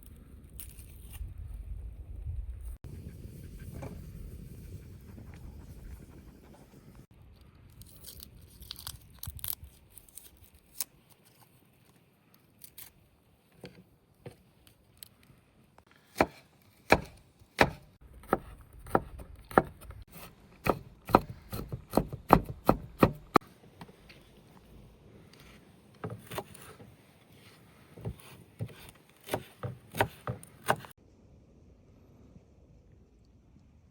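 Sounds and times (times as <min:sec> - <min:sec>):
knife chopping on wooden board: 0:16.1 - 0:23.4, 0:28.0 - 0:30.9.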